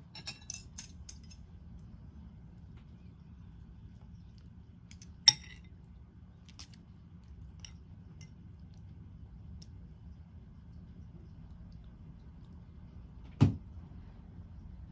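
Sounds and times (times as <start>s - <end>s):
utensil clinking on dish: 0.0s - 1.4s, 5.0s - 5.7s.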